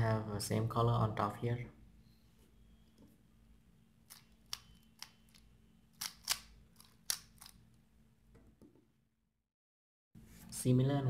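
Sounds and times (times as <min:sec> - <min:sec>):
puzzle cube plastic clicks: 0:04.1 - 0:07.7.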